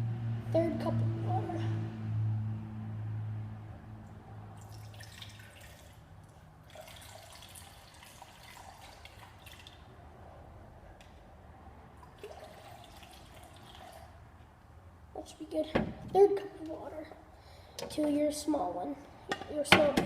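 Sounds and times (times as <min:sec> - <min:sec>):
water running into a cup: 0:06.7 - 0:09.8.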